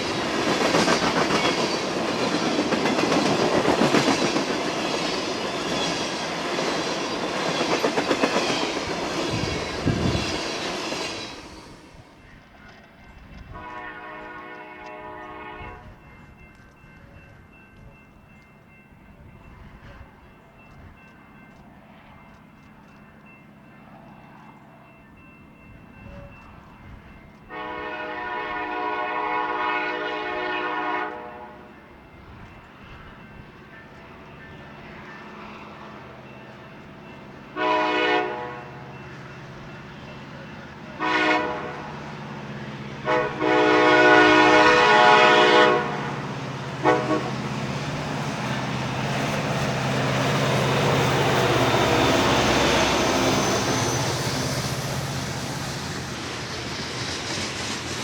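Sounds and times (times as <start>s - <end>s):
freight train wheels clattering: 0.0s - 15.0s, 39.1s - 58.0s
locomotive air horn blast: 13.5s - 16.0s, 27.5s - 31.7s, 37.6s - 38.7s, 41.0s - 41.9s, 43.0s - 46.1s, 46.8s - 47.4s.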